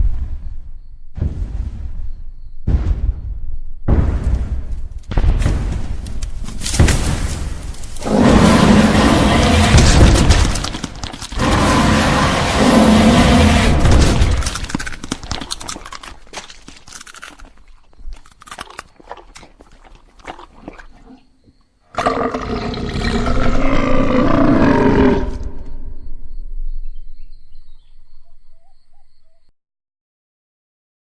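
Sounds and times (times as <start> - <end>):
crackles and small impacts: 3.9 - 21.7
deep animal-like roar: 8.0 - 14.7, 21.9 - 25.7.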